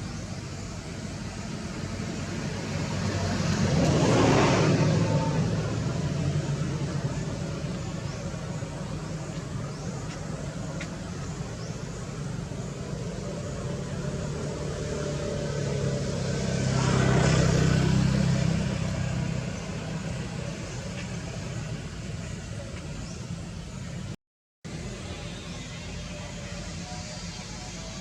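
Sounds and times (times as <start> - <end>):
engine humming: 0.0 - 28.0
vehicle passing: 1.2 - 22.0.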